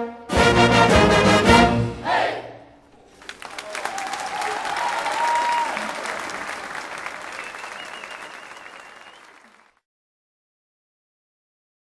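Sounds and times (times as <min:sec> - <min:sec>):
audience applauding: 0:02.9 - 0:09.8
whistles: 0:03.1 - 0:09.8.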